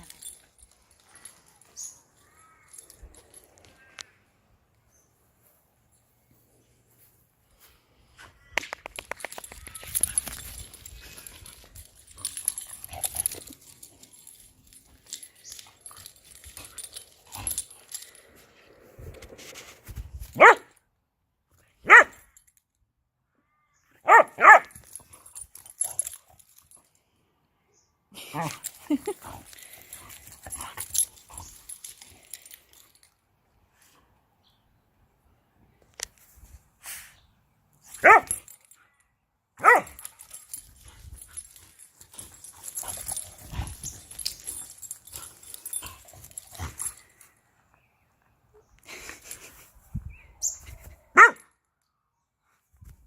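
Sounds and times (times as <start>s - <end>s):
dog barking: 20.4s - 20.7s, 21.8s - 22.2s, 24.0s - 24.7s, 38.0s - 38.3s, 39.6s - 40.0s, 51.2s - 51.4s.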